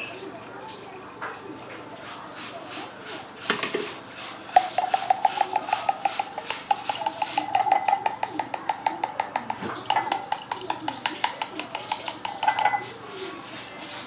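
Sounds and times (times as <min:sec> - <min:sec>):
spoon clinking on kitchenware: 0:04.5 - 0:13.1.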